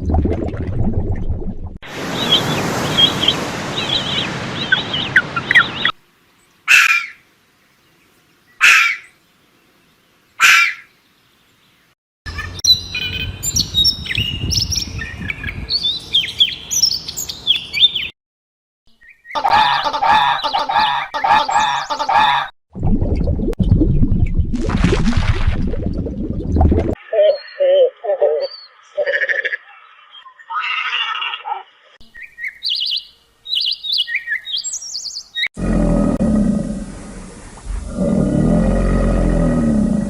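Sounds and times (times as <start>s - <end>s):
birds chirping: 1.9s - 18.1s, 18.9s - 22.4s, 27.0s - 40.0s
short bird calls: 8.6s - 9.2s, 10.4s - 10.9s.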